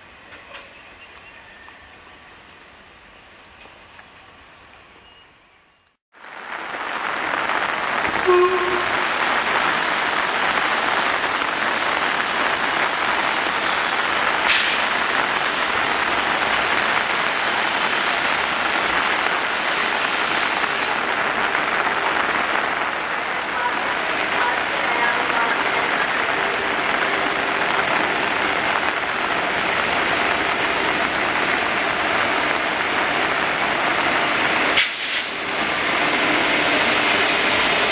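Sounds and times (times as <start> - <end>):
heavy rain pouring: 6.1 - 37.9.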